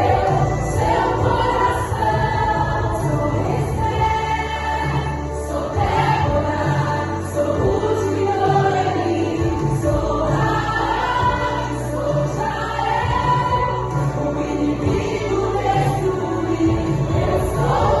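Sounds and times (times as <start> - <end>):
choir singing gospel: 0.0 - 18.0.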